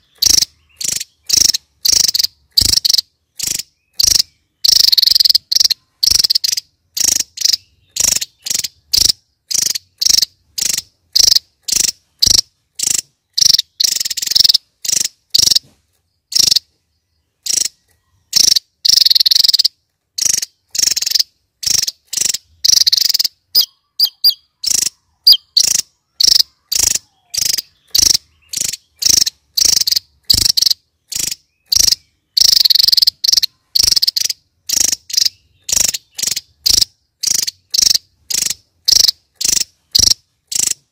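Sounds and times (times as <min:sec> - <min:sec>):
bird singing high notes: 0:22.6 - 0:29.7.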